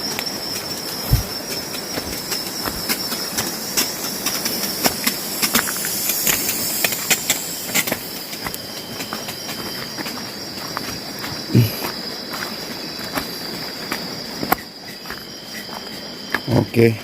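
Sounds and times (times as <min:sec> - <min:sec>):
insects droning high-pitched: 0:00.0 - 0:17.0.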